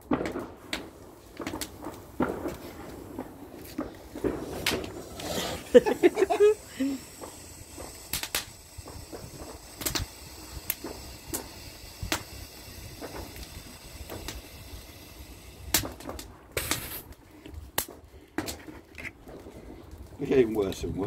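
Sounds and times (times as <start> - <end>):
sharp pops: 0.0 - 19.5
bonfire wood crackling: 0.0 - 21.0
brief hiss: 1.1 - 17.2.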